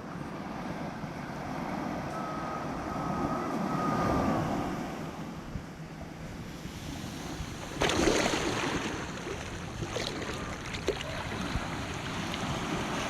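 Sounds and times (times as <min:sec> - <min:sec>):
ocean surf: 0:00.0 - 0:13.0.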